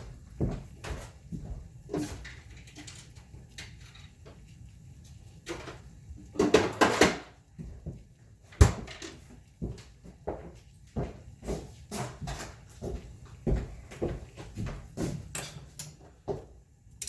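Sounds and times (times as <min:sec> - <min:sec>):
hose and fittings clattering: 0:01.9 - 0:04.4.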